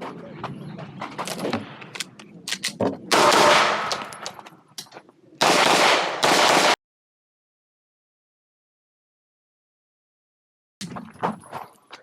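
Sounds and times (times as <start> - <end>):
pistol firing rapid shots: 3.1 - 4.1, 5.4 - 6.8.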